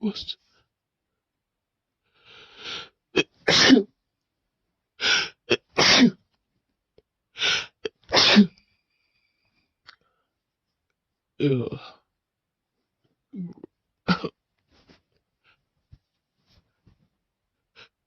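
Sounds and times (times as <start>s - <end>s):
gasping in-breath: 2.1s - 3.0s
person sneezing: 3.2s - 3.9s, 5.1s - 6.2s, 7.5s - 8.6s.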